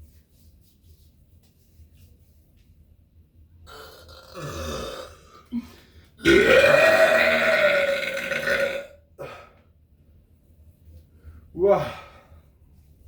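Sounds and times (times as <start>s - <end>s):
person burping loudly: 3.7s - 9.4s.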